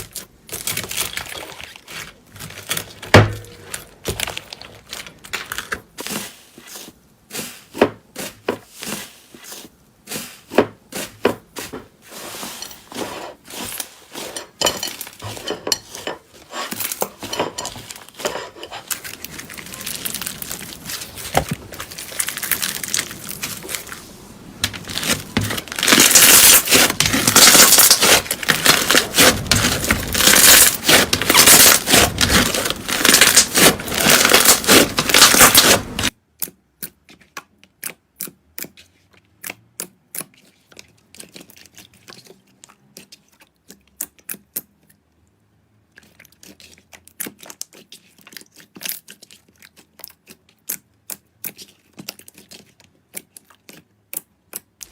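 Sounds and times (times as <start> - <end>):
slime squeezed and crackling: 0.0 - 3.0, 17.8 - 44.8, 45.8 - 54.9.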